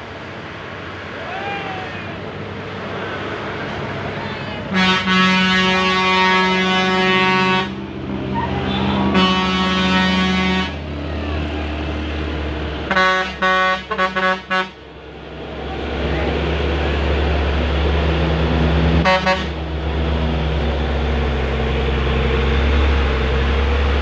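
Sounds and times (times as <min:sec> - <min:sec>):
bus engine rumble: 0:00.0 - 0:24.0
musical air horn: 0:04.7 - 0:07.8, 0:08.4 - 0:10.8, 0:12.9 - 0:14.8, 0:19.0 - 0:19.6.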